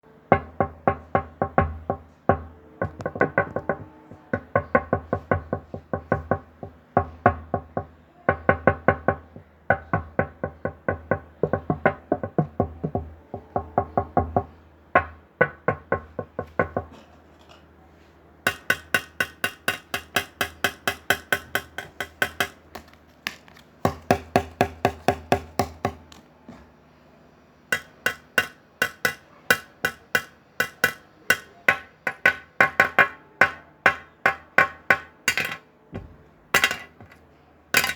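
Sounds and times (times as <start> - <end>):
knocking on glass: 0.3 - 17.0, 18.5 - 22.6, 27.7 - 37.2.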